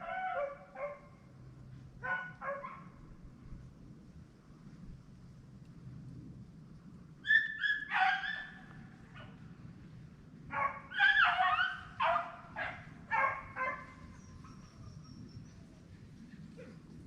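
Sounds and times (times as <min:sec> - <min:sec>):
hounds baying: 0:10.5 - 0:15.7.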